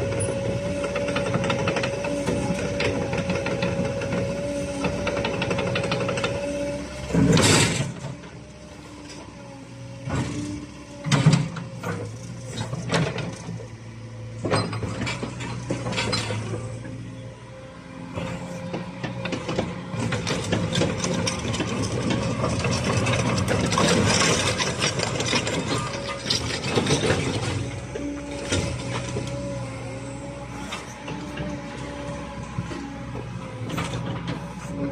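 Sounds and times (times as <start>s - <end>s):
excavator diesel engine humming: 0.0s - 34.9s.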